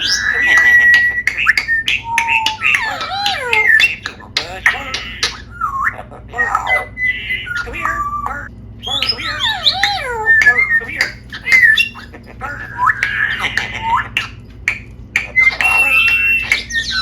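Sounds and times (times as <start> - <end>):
parrot squawking and whistling: 0.0 - 17.0
parrot clicks: 12.9 - 17.0.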